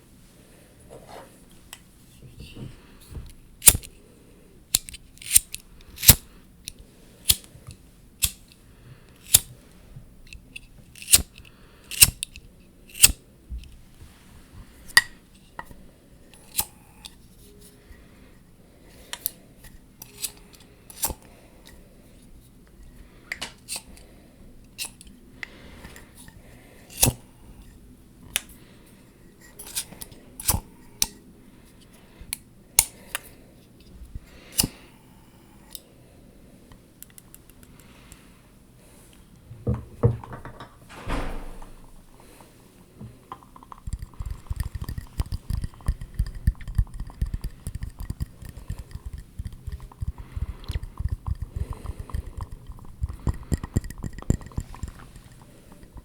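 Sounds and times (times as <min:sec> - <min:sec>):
sharp tapping on objects: 0:43.3 - 0:56.0.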